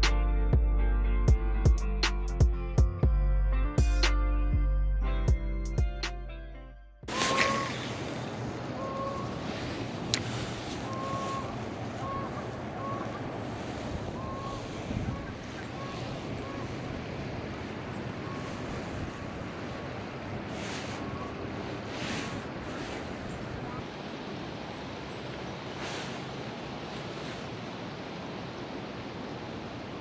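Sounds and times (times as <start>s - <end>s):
faint squeaky tones: 7.1s - 8.0s, 8.7s - 9.4s
river water rushing: 7.1s - 30.0s
wind buffeting microphone: 7.1s - 30.0s.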